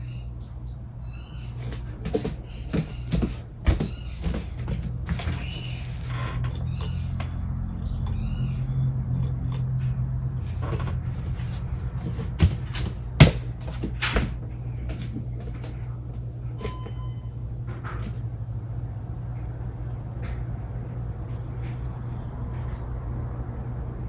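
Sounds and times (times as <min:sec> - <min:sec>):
ceiling fan motor hum: 0:00.0 - 0:24.0.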